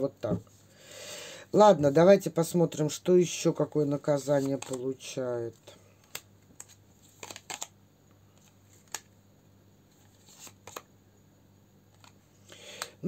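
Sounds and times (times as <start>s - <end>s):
cards snapping and rustling: 4.3s - 4.9s, 6.0s - 7.7s, 8.3s - 9.1s, 10.0s - 10.9s, 11.9s - 13.0s.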